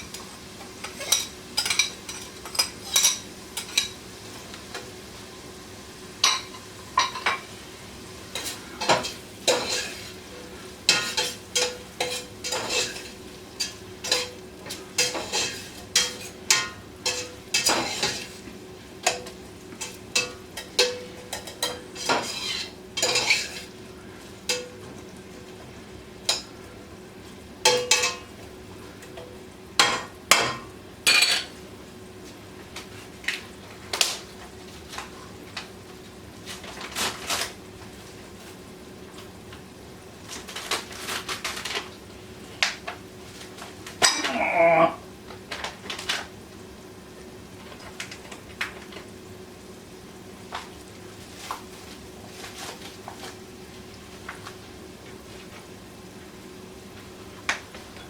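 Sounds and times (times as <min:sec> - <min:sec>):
faint sizzle: 0:00.0 - 0:58.0
spoon scraping metal pot: 0:22.0 - 0:23.6.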